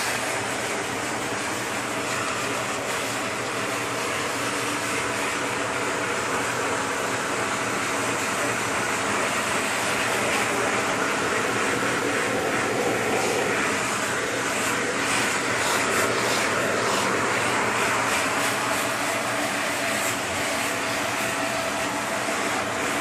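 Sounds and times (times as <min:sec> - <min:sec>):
vacuum cleaner running: 0:00.0 - 0:23.0.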